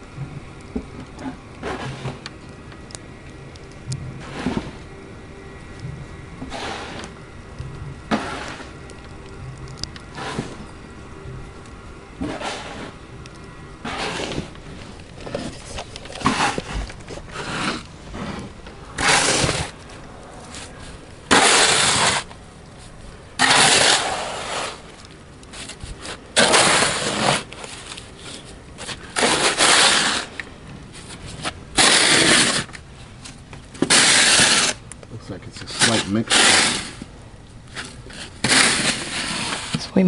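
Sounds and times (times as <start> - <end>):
snow shovel scraping pavement: 1.6 - 2.2, 4.2 - 4.8, 6.5 - 7.0, 8.1 - 8.8, 10.2 - 10.6, 12.2 - 13.0, 13.8 - 14.5, 15.2 - 19.8, 21.3 - 22.3, 23.4 - 24.9, 25.5 - 30.4, 31.0 - 32.8, 33.8 - 34.8, 35.7 - 37.1, 37.8 - 39.8.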